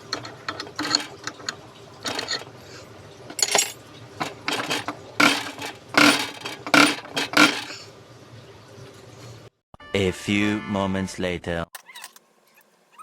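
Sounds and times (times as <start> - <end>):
metal tools clinking and scraping: 0.0 - 7.8.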